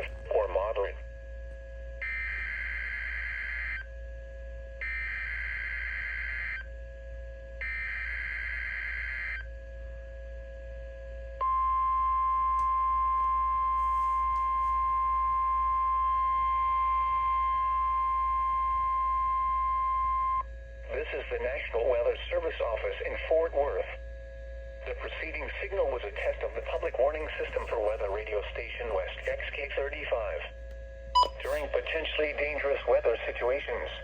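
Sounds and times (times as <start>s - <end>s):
steady alarm tone: 24.3s - 30.5s, 31.2s - 34.0s.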